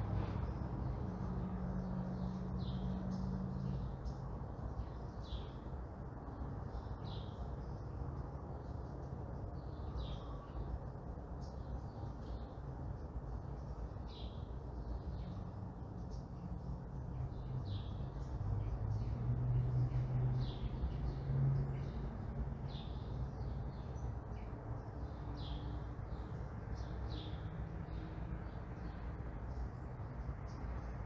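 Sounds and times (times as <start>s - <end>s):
low rumble of traffic: 0.0s - 31.0s
bird chirping: 11.4s - 31.0s.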